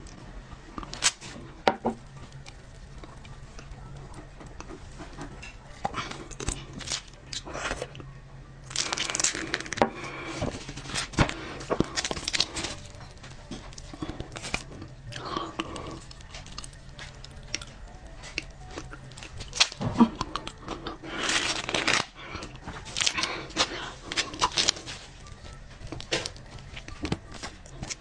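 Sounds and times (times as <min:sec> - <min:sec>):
plastic packaging crinkling: 0:08.7 - 0:15.0, 0:15.8 - 0:28.0.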